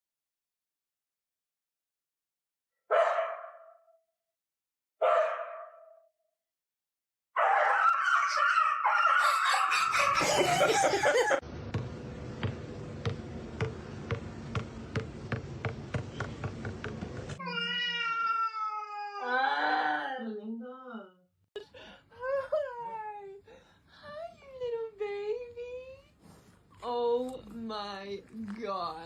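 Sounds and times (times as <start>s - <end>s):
cats meowing and yowling: 17.4s - 20.2s.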